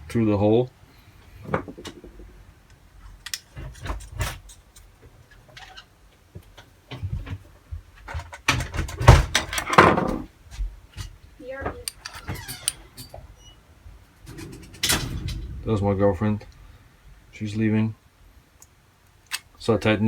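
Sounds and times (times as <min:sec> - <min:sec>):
clattering and knocking: 0:01.4 - 0:02.4, 0:03.3 - 0:05.8, 0:06.4 - 0:13.4, 0:14.2 - 0:15.7
small metal parts clicking: 0:03.2 - 0:04.9, 0:11.8 - 0:13.2.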